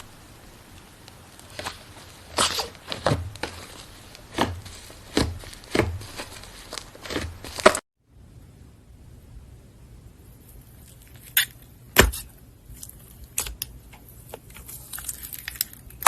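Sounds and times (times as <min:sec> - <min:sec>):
slime squishing: 0:01.1 - 0:07.8, 0:10.4 - 0:16.0.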